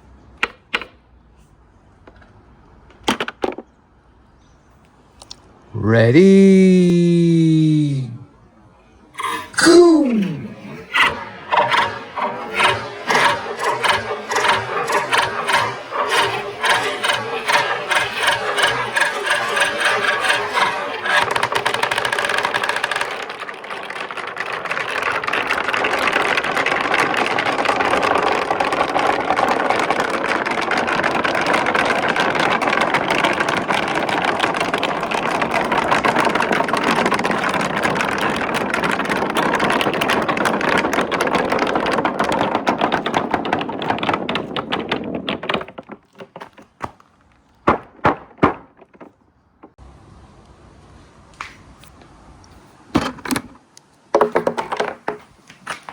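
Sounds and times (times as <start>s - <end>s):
marbles rolling and clattering: 9.2s - 49.8s.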